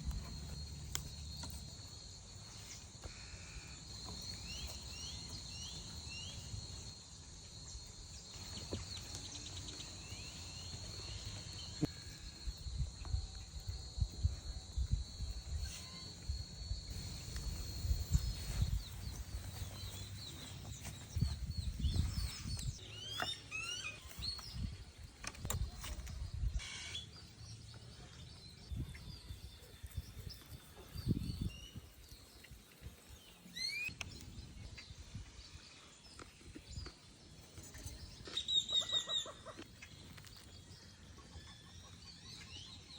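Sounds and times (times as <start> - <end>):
high insect trill: 0.0 - 35.5
rising bird chirps: 17.0 - 24.8, 33.3 - 34.2.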